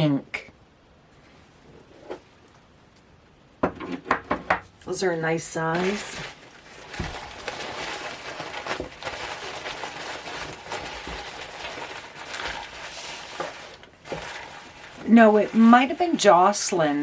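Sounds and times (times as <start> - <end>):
wrapping paper crinkling: 5.5 - 17.0.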